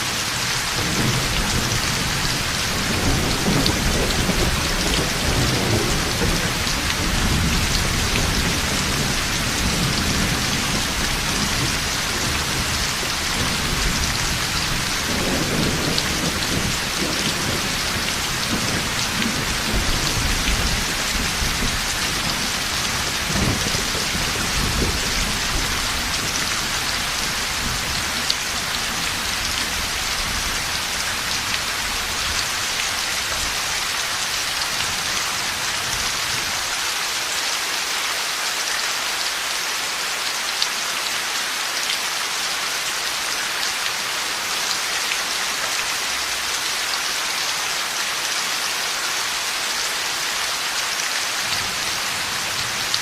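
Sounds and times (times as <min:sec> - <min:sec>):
heavy rain falling: 0:00.0 - 0:53.0
thunder rumbling: 0:00.8 - 0:27.8.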